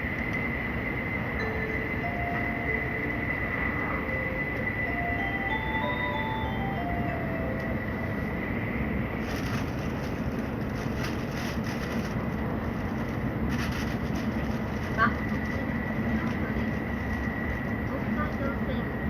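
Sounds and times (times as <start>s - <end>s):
train rushing rumble: 0.0s - 19.0s
thin constant high tone: 1.4s - 9.0s.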